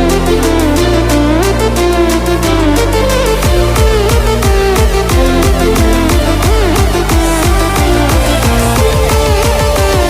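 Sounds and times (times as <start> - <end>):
electronic dance music: 0.0 - 10.0.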